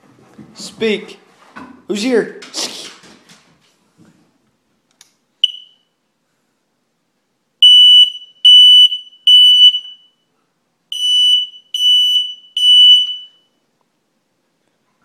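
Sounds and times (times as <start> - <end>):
fire alarm beeping: 5.4 - 6.0, 7.6 - 10.3, 10.9 - 13.6.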